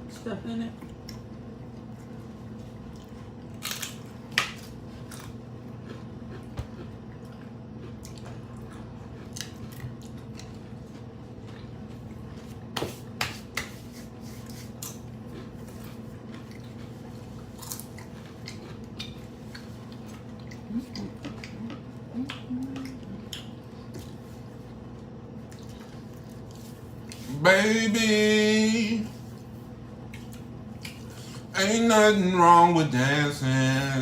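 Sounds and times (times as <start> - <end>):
chewing crunchy tacos: 0.0 - 34.0.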